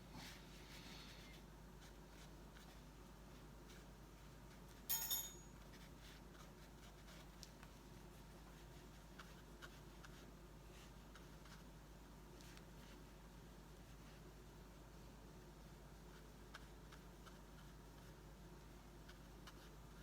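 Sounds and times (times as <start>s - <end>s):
brush scratching on paper: 0.2s - 4.9s, 5.6s - 14.4s, 15.6s - 20.0s
ringing clatter: 4.9s - 5.6s.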